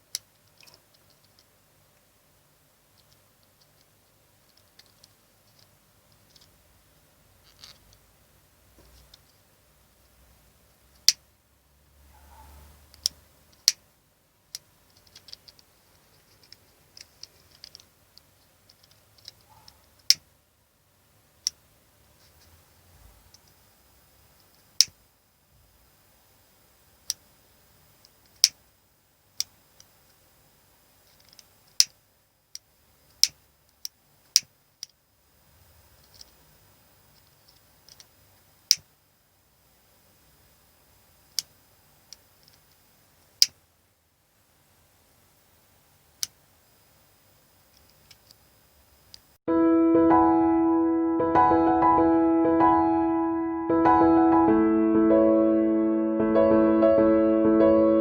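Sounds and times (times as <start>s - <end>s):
lighter clicking: 24.4s - 25.0s, 37.2s - 38.9s.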